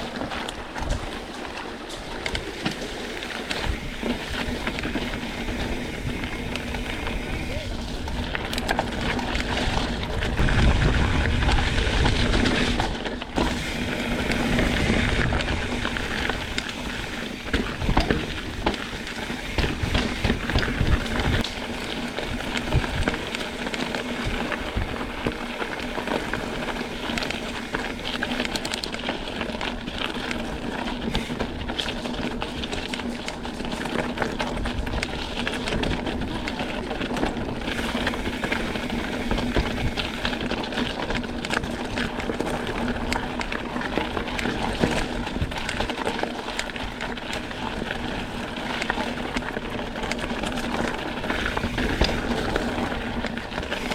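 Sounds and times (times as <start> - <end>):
bike rattling over bumps: 0.0 - 53.9
bike tyres crunching over rock: 0.0 - 53.9
wind buffeting microphone: 2.1 - 28.8.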